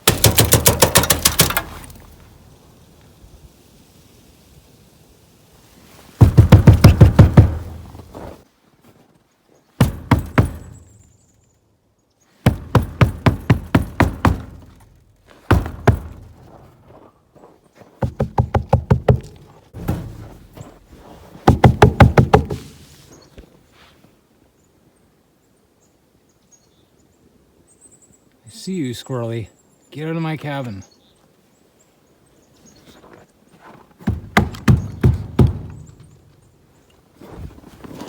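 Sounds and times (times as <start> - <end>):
rapid knocking: 0.0 - 1.6, 6.2 - 7.8, 18.0 - 19.4, 21.5 - 22.6.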